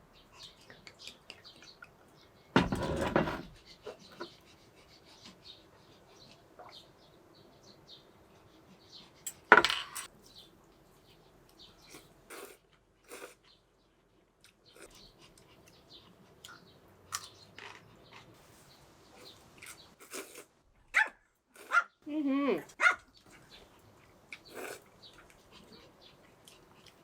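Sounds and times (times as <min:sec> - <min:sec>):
dishes clattering: 0:02.6 - 0:03.5.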